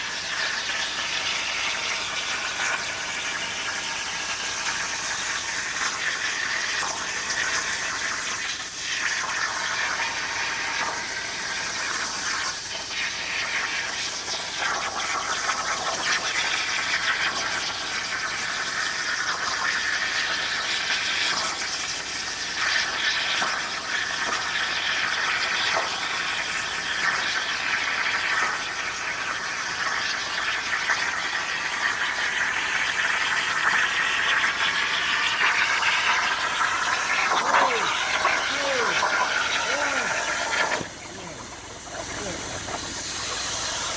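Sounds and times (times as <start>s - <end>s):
plasma cutter hissing: 35.2s - 43.9s.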